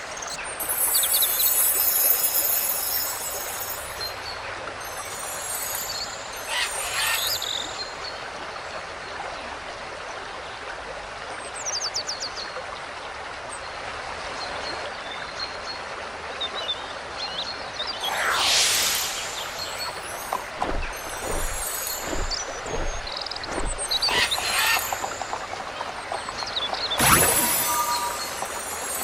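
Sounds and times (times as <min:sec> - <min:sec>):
rushing outdoor hiss: 0:00.0 - 0:08.4, 0:18.0 - 0:29.0
bird chirps: 0:18.0 - 0:29.0
bird falling trill: 0:18.0 - 0:29.0.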